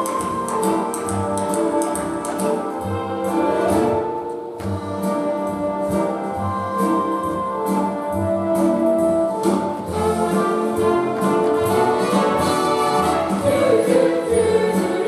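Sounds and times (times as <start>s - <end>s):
orchestral music with brass: 0.0s - 15.0s.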